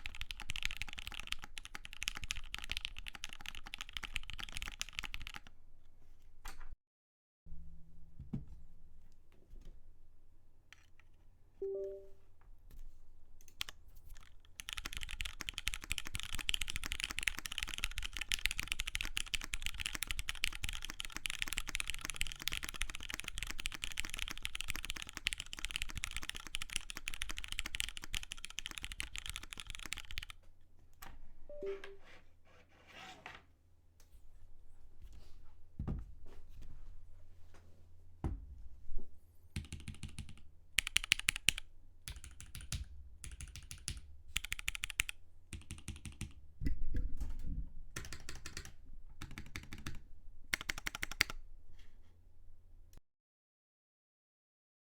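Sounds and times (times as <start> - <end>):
mechanical keyboard typing: 0.0 - 5.6, 13.4 - 30.4, 39.6 - 46.4, 48.0 - 51.4
two-note blip: 11.6 - 12.2, 31.5 - 32.0.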